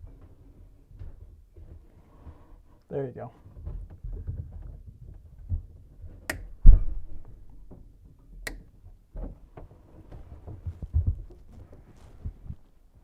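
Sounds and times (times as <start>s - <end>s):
soft knocking and handling: 0.0s - 13.0s
sharp clicks: 6.3s - 7.6s, 8.4s - 8.7s.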